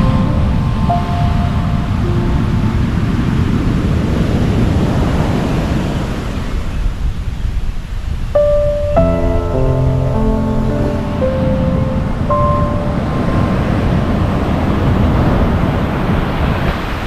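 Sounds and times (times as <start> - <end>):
wind rumbling on microphone: 0.0 - 17.0
waves breaking: 8.0 - 17.0.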